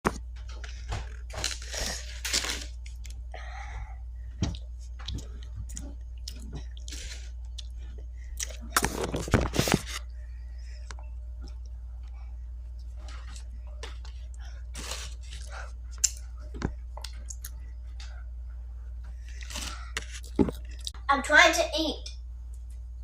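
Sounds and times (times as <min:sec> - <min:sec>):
chewing and crunching food: 0:00.4 - 0:03.3, 0:04.5 - 0:10.2, 0:10.8 - 0:18.3, 0:19.1 - 0:21.1.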